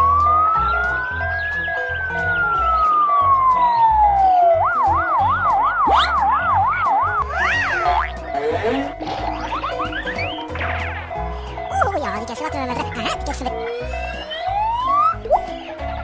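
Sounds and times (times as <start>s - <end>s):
wailing and yelping siren: 0.0s - 7.8s, 13.7s - 15.3s
background music with bass beat: 0.0s - 12.2s.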